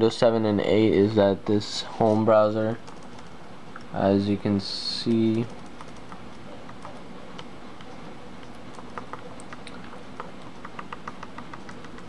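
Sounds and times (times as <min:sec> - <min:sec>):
laptop keyboard typing clicks: 0:02.8 - 0:03.3, 0:05.1 - 0:07.5, 0:08.4 - 0:12.0.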